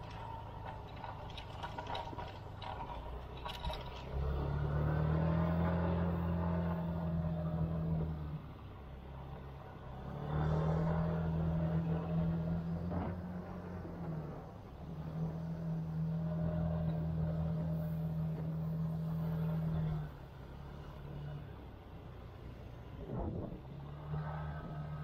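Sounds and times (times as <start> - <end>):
clattering: 0.0 - 4.4.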